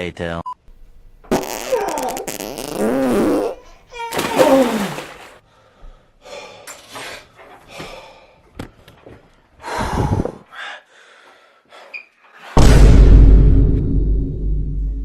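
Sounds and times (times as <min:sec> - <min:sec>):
person gasping and snorting: 0:09.6 - 0:10.9.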